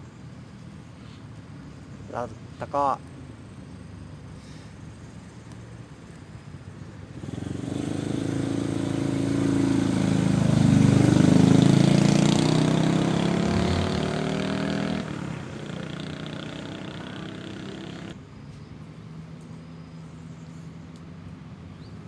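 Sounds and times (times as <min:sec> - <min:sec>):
vehicle engine passing by: 0:07.1 - 0:18.2.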